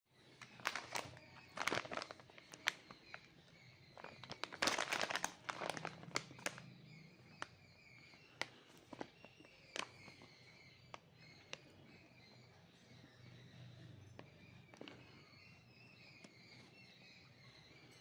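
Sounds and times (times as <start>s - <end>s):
snack packet crinkling: 0.4s - 3.3s, 3.9s - 6.7s, 8.3s - 10.4s.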